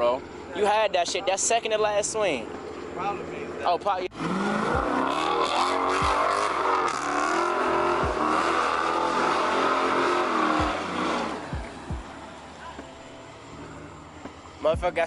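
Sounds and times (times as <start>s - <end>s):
car engine revving hard: 4.1s - 14.6s
short low thumps: 8.0s - 8.3s, 11.5s - 12.1s.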